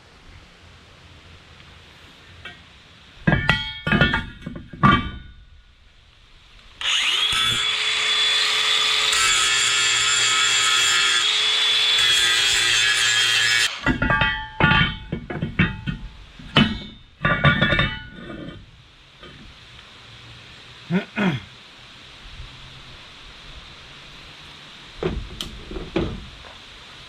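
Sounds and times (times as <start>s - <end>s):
metal clanks: 3.2s - 5.5s, 12.0s - 19.4s
angle grinder whining: 6.8s - 14.0s.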